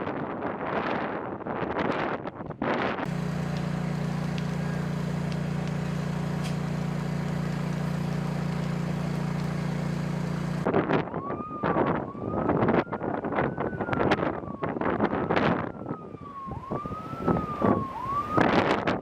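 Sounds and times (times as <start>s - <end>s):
wind buffeting microphone: 0.0s - 9.8s, 10.6s - 19.0s
engine drone: 3.0s - 10.7s.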